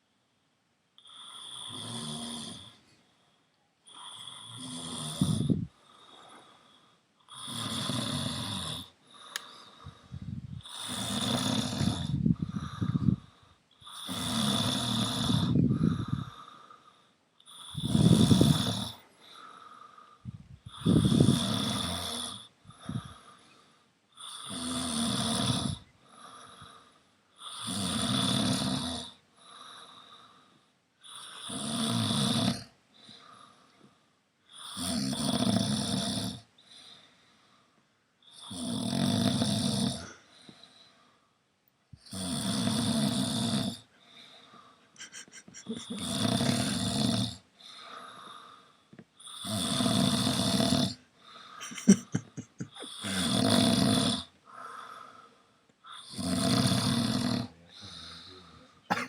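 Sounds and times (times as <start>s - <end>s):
person snoring: 1.0s - 2.8s, 3.9s - 5.8s, 7.3s - 16.6s, 17.5s - 19.9s, 20.6s - 23.3s, 24.2s - 26.8s, 27.4s - 30.3s, 31.0s - 33.4s, 34.5s - 36.5s, 38.3s - 40.3s, 42.0s - 43.9s, 45.0s - 48.6s, 49.2s - 55.1s, 55.9s - 59.0s.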